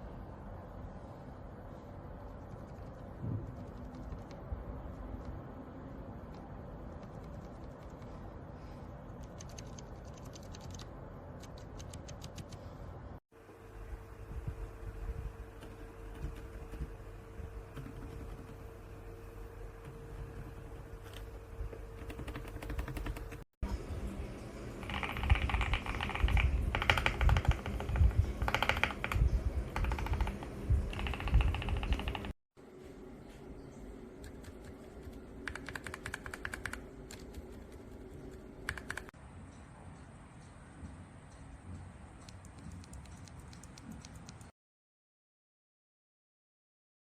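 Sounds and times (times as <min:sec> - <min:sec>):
steady low hum: 0:00.0 - 0:44.5
mechanical keyboard typing: 0:02.4 - 0:04.4, 0:06.9 - 0:08.1, 0:09.2 - 0:12.6, 0:21.1 - 0:23.4, 0:24.8 - 0:32.4, 0:34.2 - 0:39.2, 0:42.2 - 0:44.5.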